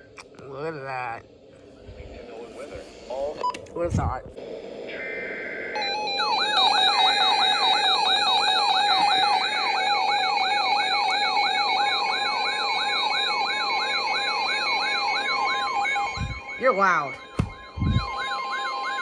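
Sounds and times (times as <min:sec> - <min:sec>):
steady high tone: 0:04.9 - 0:19.0
electronic siren yelping: 0:05.7 - 0:19.0.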